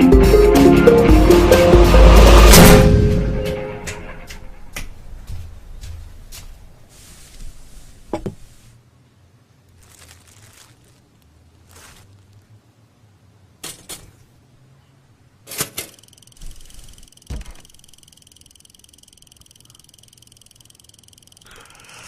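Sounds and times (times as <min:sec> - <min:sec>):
sharp clicks and knocks: 0:15.5 - 0:21.4
electronic alarm clock trilling: 0:15.9 - 0:22.0.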